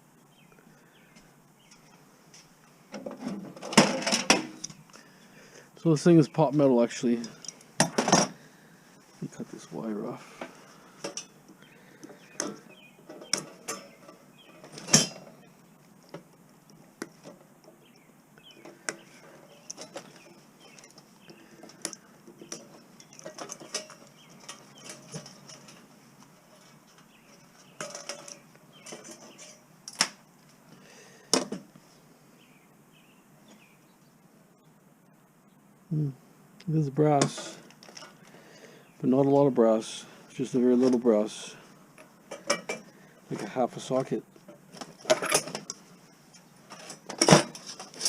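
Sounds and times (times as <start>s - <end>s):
metal parts clinking and knocking: 12.4s - 15.4s, 21.6s - 25.8s, 27.3s - 30.0s, 44.9s - 45.8s.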